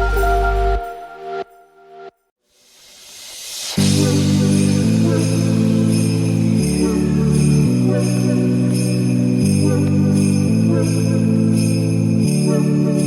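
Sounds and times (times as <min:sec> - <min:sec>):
festive music with sustained chords: 0:03.8 - 0:13.0
jingle bells shaken: 0:03.8 - 0:13.0.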